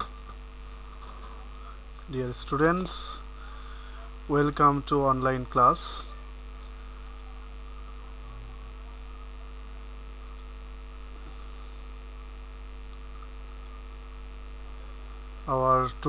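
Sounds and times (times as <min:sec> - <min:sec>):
electrical mains hum: 0:00.0 - 0:16.0
faint high whine and hiss: 0:00.0 - 0:16.0.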